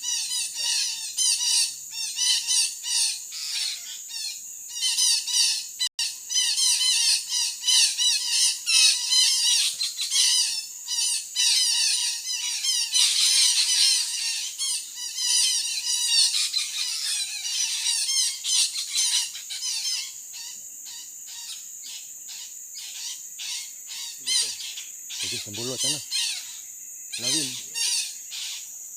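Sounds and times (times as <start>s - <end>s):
high insect drone: 0.0s - 28.9s
parakeets squawking: 6.4s - 20.2s, 23.0s - 26.6s, 27.2s - 28.6s.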